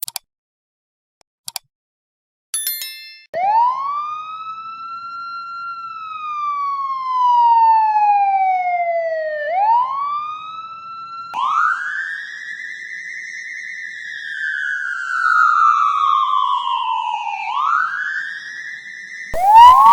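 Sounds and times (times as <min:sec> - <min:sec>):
police siren wail: 0:03.4 - 0:12.4, 0:19.4 - 0:19.9
high ringing tone: 0:19.4 - 0:19.9.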